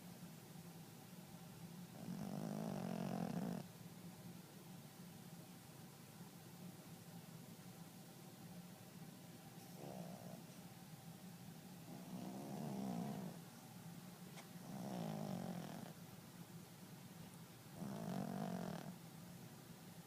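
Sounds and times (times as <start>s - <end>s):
dog snoring: 2.0s - 3.7s, 9.8s - 10.4s, 11.9s - 13.4s, 14.6s - 16.0s, 17.8s - 19.0s.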